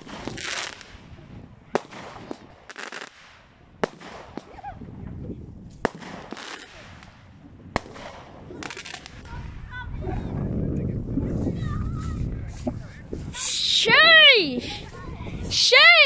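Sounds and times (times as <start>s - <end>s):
fireworks bangs: 0.0s - 4.8s, 5.7s - 9.7s.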